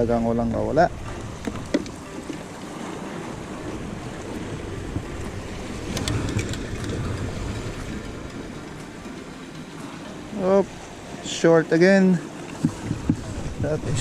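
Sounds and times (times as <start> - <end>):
wind rumbling on microphone: 0.0 - 11.3, 12.4 - 14.0
sea waves: 0.0 - 14.0.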